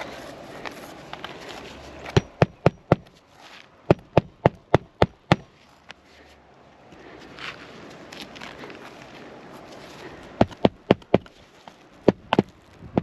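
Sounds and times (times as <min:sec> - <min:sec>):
hammer striking nail: 0:02.1 - 0:03.1, 0:03.9 - 0:05.5.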